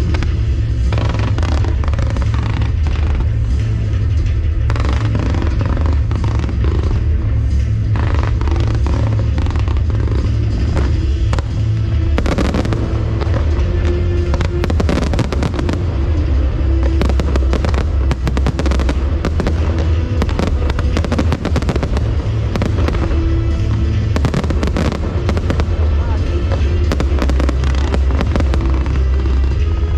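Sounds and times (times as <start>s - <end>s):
fireworks bursts and crackling: 0.0s - 29.9s
low rumble: 0.0s - 29.9s.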